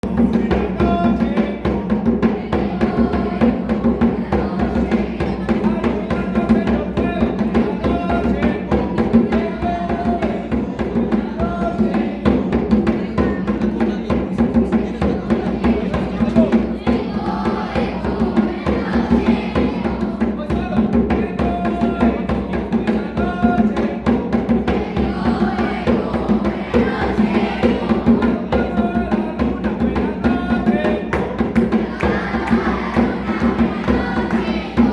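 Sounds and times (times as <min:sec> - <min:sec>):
music with drums and percussion: 0:00.0 - 0:34.9.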